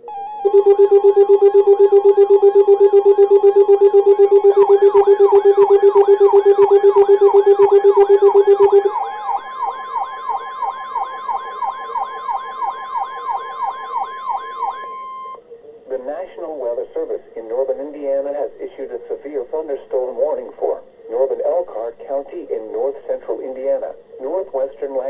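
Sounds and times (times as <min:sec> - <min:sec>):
fast-pulsing low beep: 0:00.0 - 0:15.4
steady warning alarm tone: 0:00.0 - 0:15.4
warbling siren: 0:00.0 - 0:15.4.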